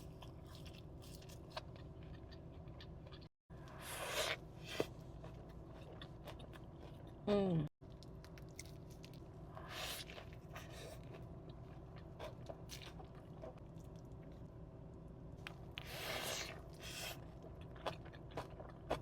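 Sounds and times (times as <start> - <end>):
person chewing food: 0.0 - 7.2, 7.9 - 14.4, 15.4 - 19.0
low steady hum: 0.0 - 19.0.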